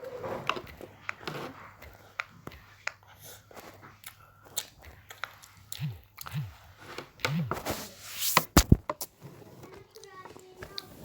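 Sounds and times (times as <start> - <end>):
fidget toys popping and clicking: 8.3 - 9.1.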